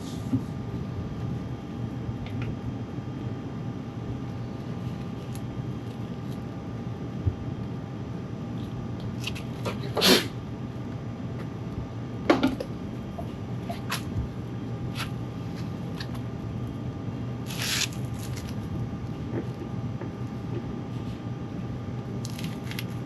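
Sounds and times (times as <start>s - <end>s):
steady low hum: 0.0s - 23.0s
sandpaper scratching bodywork: 17.5s - 18.4s.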